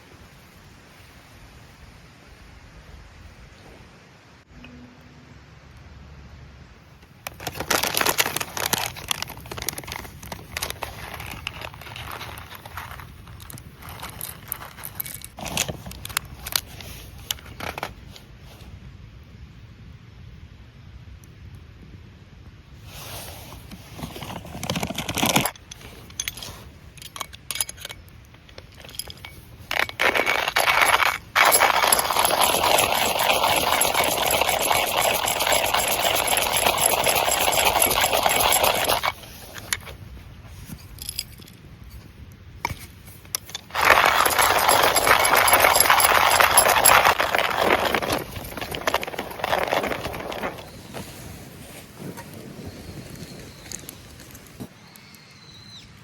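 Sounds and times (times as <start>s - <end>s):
rustling and scraping: 7.2s - 18.8s, 22.8s - 54.7s
metallic clinks: 25.2s - 39.8s, 43.4s - 50.5s.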